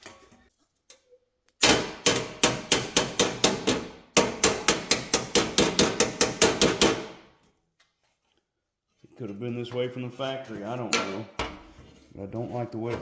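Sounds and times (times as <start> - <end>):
hammer striking metal: 1.6 - 7.1.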